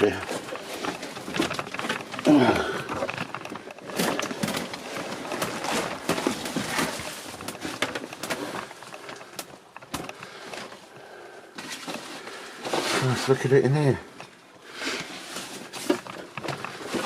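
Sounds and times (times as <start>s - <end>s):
footsteps through debris: 0.0s - 10.9s.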